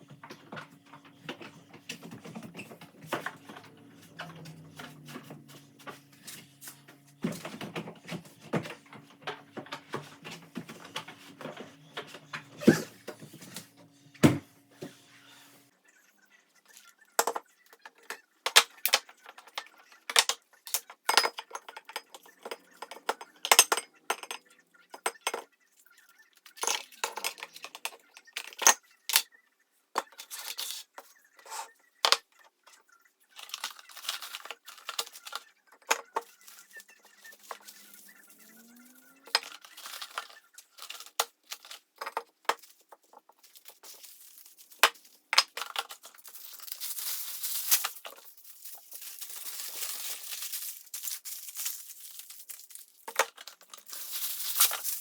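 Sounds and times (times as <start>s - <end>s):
containers clicking and knocking: 17.2s - 25.5s, 33.4s - 50.8s, 52.8s - 55.0s
plastic crinkling: 33.3s - 55.0s.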